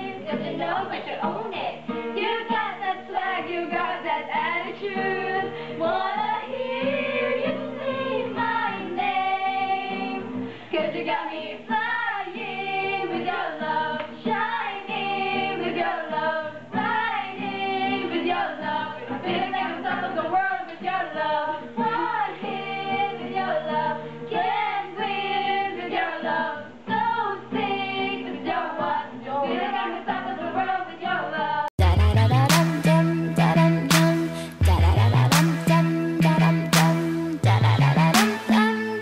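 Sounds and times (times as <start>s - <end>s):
group singing pop song: 0.0s - 39.0s
guitar chords: 31.8s - 39.0s.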